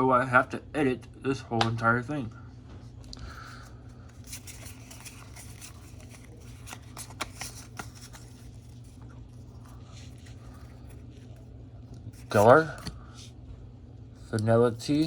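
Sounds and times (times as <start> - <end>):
steady low hum: 0.0 - 15.0
cards and wrapper crinkling: 3.4 - 13.1.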